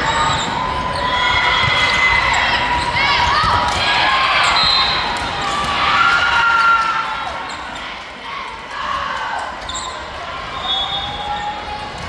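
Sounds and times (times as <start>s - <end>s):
shoes squeaking on court floor: 0.0s - 5.8s, 9.6s - 11.5s.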